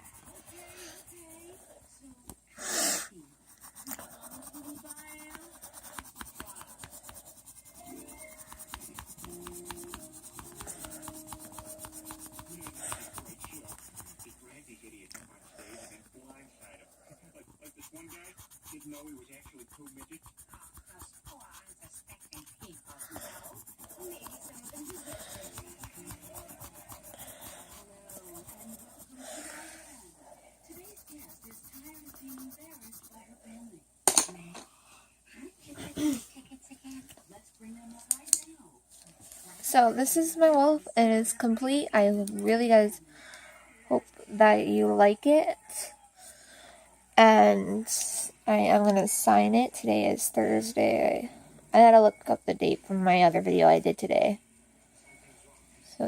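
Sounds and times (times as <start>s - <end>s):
pencil scratching on paper: 0.0s - 1.8s, 3.4s - 14.6s, 15.4s - 30.0s, 30.6s - 33.4s.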